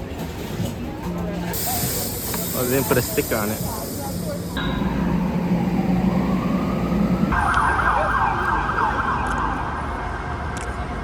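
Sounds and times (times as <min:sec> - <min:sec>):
faint rising tone: 0:04.6 - 0:07.4
low hum: 0:04.6 - 0:07.4
siren yelping: 0:05.7 - 0:09.7.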